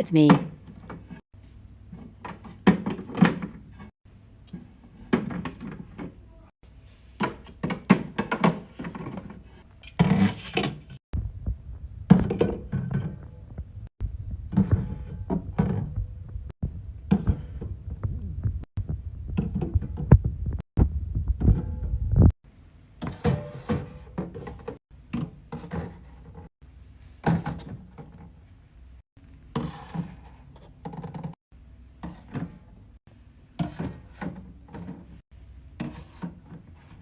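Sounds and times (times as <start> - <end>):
items knocking on fridge shelves: 1.9 - 3.7, 5.0 - 6.2, 7.2 - 11.0, 12.1 - 13.8, 14.5 - 16.2, 23.0 - 26.5, 27.2 - 28.4.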